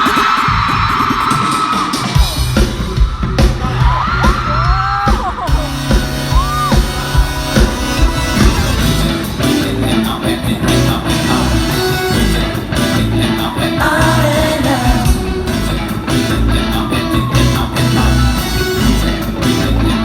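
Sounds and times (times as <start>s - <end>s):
live rock band playing: 0.0s - 20.0s
person singing: 8.4s - 20.0s.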